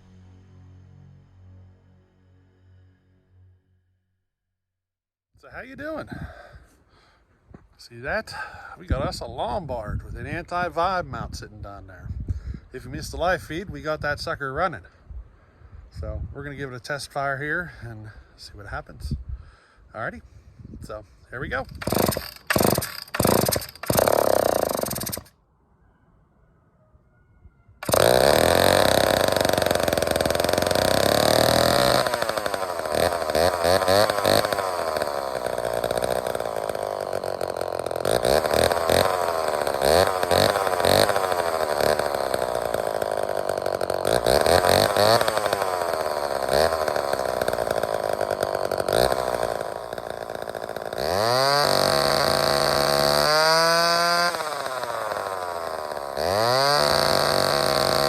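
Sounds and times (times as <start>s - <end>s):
chainsaw engine revving: 21.5s - 25.3s, 27.8s - 58.0s.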